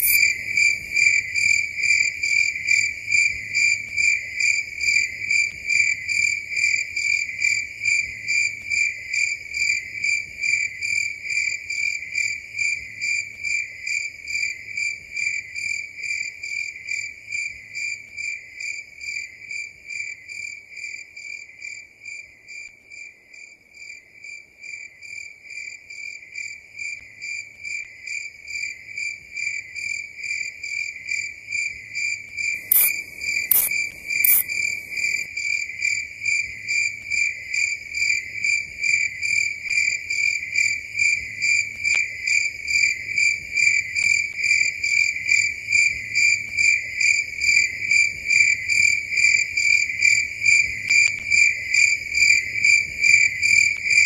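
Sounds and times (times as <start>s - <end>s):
cricket chirping: 0.0s - 20.6s, 26.4s - 54.0s
sharp clicks: 32.6s - 35.3s.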